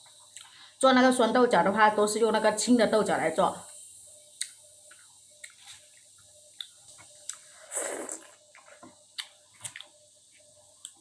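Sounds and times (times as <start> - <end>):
person chewing: 4.4 - 10.0, 10.7 - 11.0.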